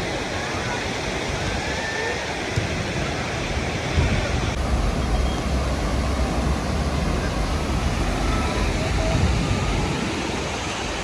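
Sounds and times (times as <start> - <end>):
waves breaking on a beach: 0.0 - 11.0
wind rumble on microphone: 3.9 - 11.0.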